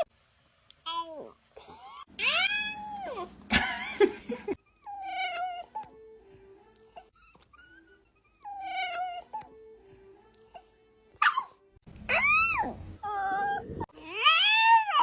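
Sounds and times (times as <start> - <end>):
cat yowling: 14.0 - 15.0.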